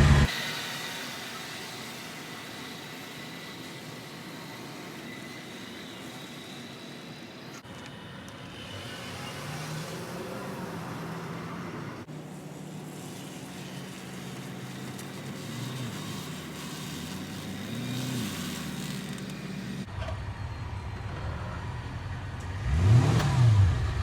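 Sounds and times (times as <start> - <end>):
car engine running: 0.0 - 0.3.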